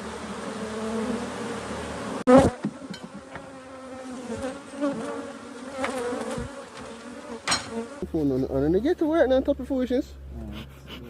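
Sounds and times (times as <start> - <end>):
honeybees buzzing: 0.0 - 8.4.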